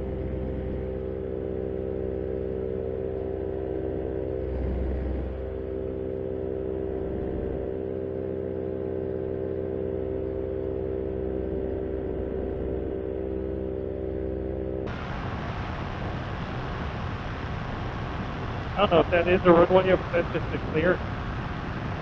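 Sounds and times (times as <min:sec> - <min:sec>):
paramotor engine droning: 0:00.0 - 0:22.0
wind rushing: 0:14.9 - 0:22.0.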